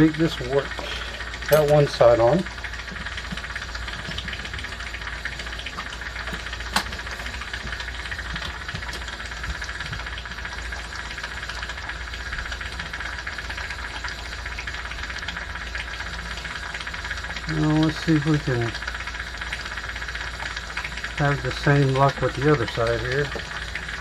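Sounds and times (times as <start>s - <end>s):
steady hissing: 0.0s - 10.4s, 20.6s - 24.0s.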